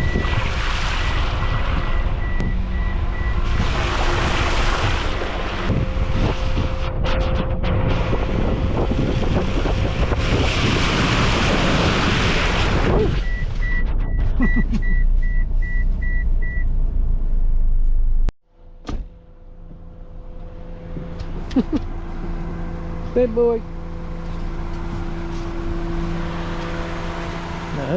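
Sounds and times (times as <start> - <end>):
steady engine hum: 0.0 - 27.9
tyres and engine rushing through mud: 0.0 - 27.9
car warning chime beeping: 1.4 - 3.5, 13.2 - 16.7.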